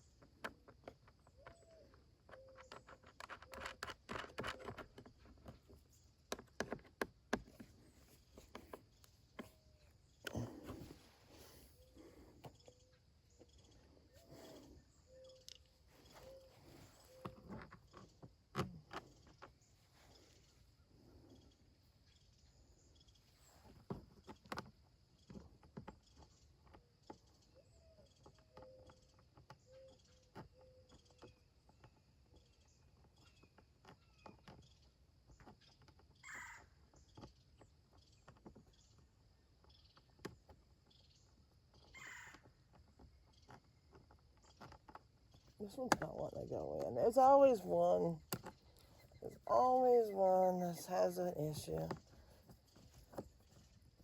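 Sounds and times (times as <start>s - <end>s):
faint bird calls: 1.2s - 4.8s, 9.4s - 18.2s, 27.4s - 31.5s, 36.2s - 37.2s, 41.0s - 43.5s.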